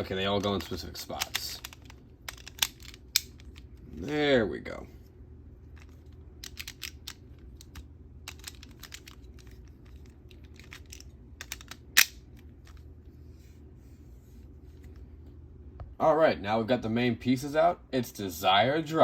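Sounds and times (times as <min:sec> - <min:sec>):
plastic toy parts clicking: 0:00.4 - 0:03.6, 0:05.8 - 0:12.2.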